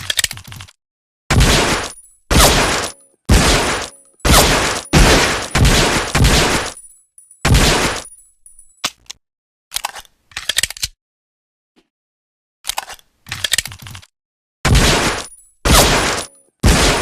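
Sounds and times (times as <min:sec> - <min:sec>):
pistol shots ringing: 0:01.4 - 0:06.9, 0:14.7 - 0:17.0.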